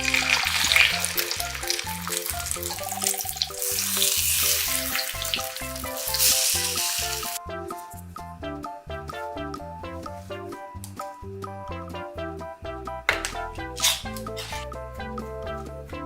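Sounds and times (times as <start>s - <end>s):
food sizzling in a frying pan: 0.0s - 7.4s
bouncy background music: 0.0s - 16.0s.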